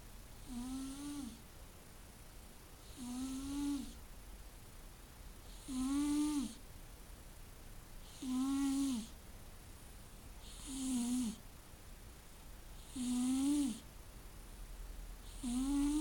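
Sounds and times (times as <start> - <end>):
person snoring: 0.4 - 1.4, 2.9 - 3.9, 5.6 - 6.6, 8.1 - 9.1, 10.4 - 11.4, 12.9 - 13.8, 15.3 - 16.0.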